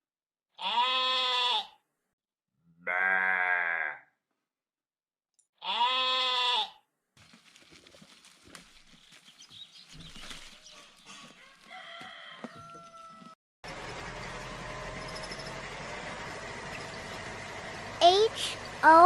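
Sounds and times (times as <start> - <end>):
sheep bleating: 0.6 - 1.8, 2.8 - 4.1, 5.6 - 6.8.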